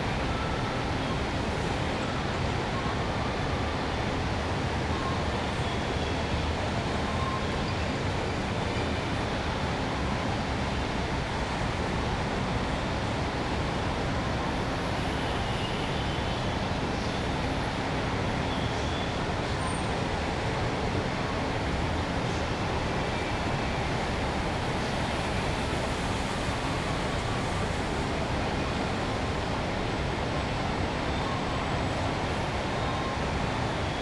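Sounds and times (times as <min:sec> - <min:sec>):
road traffic noise: 0:09.8 - 0:34.0.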